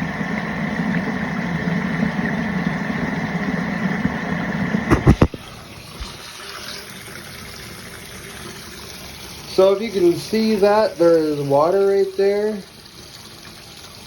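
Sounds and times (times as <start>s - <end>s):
water running from tap into sink: 3.4s - 14.0s.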